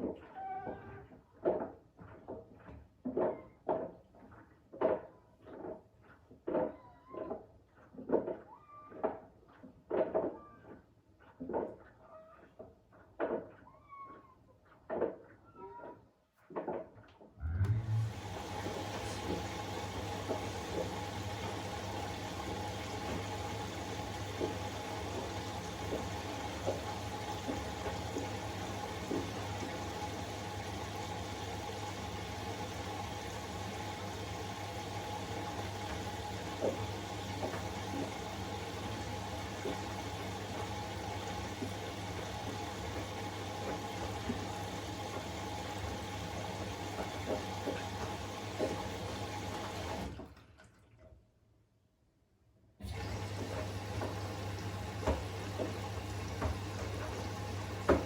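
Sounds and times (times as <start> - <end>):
washing machine humming: 17.4 - 50.9, 52.8 - 58.0
light knocks in washing machine: 56.4 - 56.8, 57.8 - 58.0.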